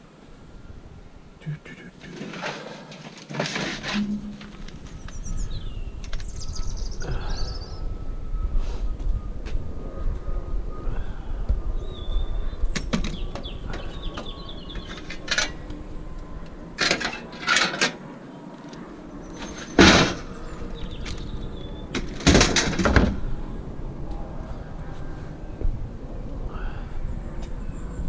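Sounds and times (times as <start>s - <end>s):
scrap metal clanking: 2.0s - 4.8s, 16.8s - 18.0s, 19.4s - 20.4s
steady low rumble: 3.8s - 17.4s, 18.0s - 28.0s.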